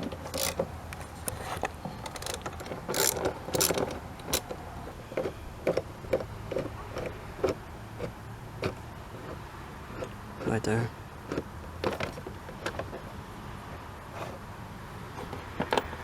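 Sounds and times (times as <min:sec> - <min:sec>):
socket ratchet clicking: 0:00.0 - 0:01.0, 0:01.6 - 0:04.6.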